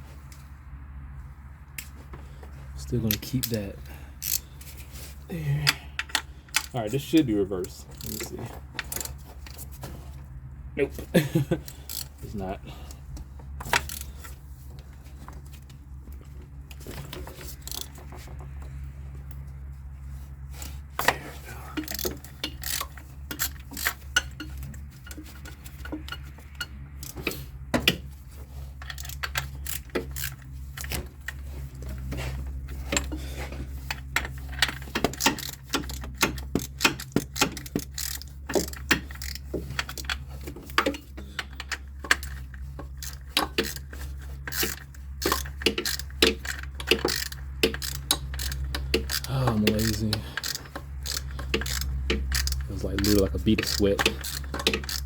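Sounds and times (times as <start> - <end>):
metal tools clinking: 2.8 - 10.2, 20.6 - 27.5, 28.5 - 55.0.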